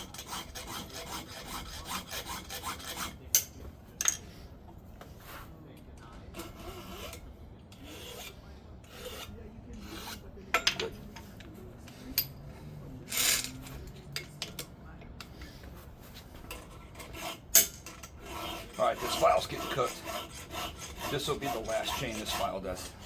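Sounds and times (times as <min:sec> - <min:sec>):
hand file rasping on chain: 0:00.0 - 0:03.5, 0:06.4 - 0:07.2, 0:07.8 - 0:10.2, 0:16.5 - 0:23.0.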